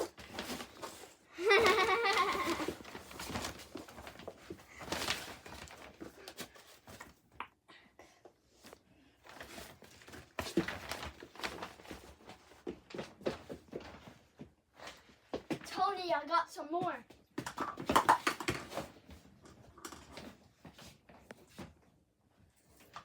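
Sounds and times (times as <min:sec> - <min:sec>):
rustling: 0:00.0 - 0:07.2.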